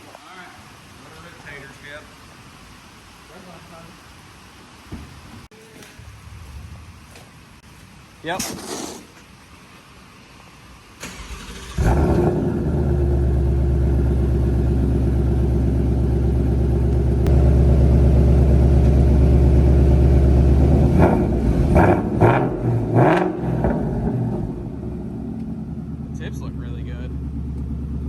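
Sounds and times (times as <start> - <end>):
car engine starting and idling: 10.9 - 28.0.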